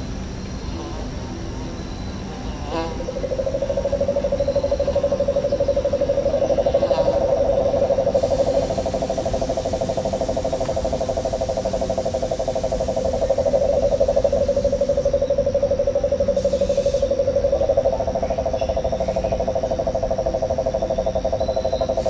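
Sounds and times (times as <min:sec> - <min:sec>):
bees buzzing: 0:02.3 - 0:15.0.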